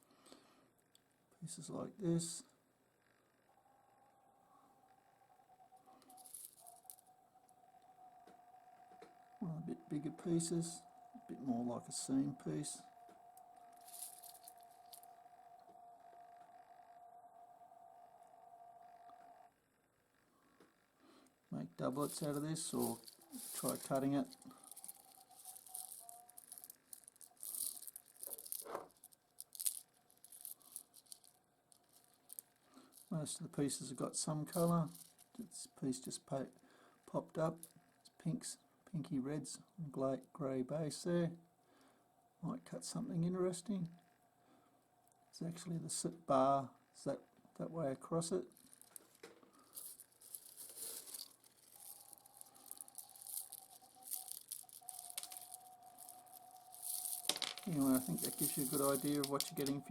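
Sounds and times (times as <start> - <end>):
faint steady tone: 0.0 - 59.9
light crinkling: 4.8 - 16.7, 20.4 - 39.7, 47.0 - 59.9
stones clicking and rattling: 6.0 - 7.0, 11.4 - 15.1, 21.8 - 33.1, 34.4 - 36.2, 48.5 - 59.9
stones scraping: 21.8 - 31.3, 48.6 - 59.9.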